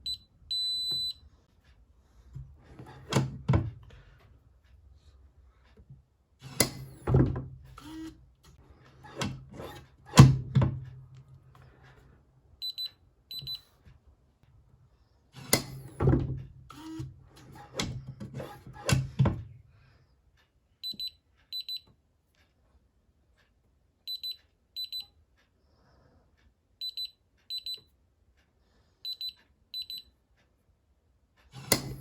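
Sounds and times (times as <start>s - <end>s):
sharp mechanical clicks and clunks: 0.1s - 4.8s, 5.6s - 13.6s, 15.4s - 19.6s, 31.4s - 32.0s.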